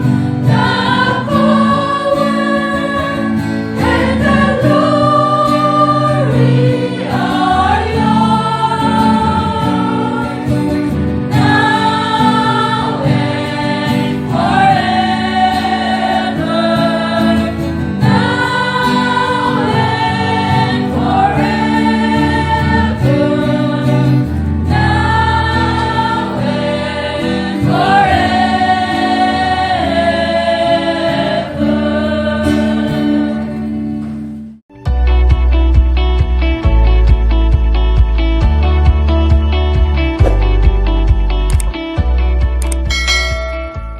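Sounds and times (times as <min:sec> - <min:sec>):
church choir singing a hymn: 0:00.0 - 0:34.2.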